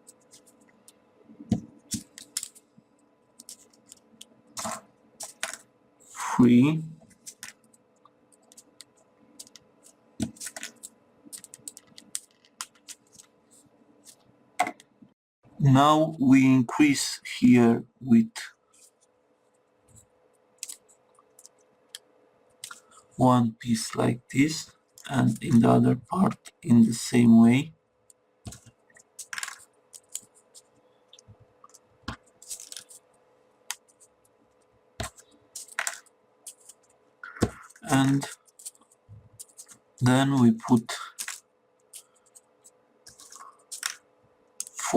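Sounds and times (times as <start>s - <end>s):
paper crackling and clicking: 3.4s - 4.2s, 8.4s - 13.3s, 28.5s - 30.7s, 31.7s - 33.0s, 35.0s - 39.8s, 40.4s - 44.0s
paper rustling: 32.4s - 33.0s, 35.0s - 39.8s.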